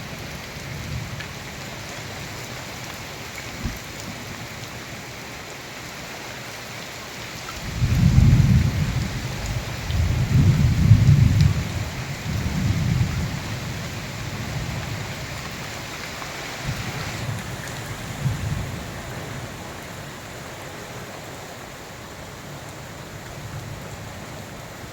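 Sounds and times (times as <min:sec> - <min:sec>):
heavy rain: 0:00.0 - 0:24.9
thunder rumbling: 0:07.7 - 0:15.2.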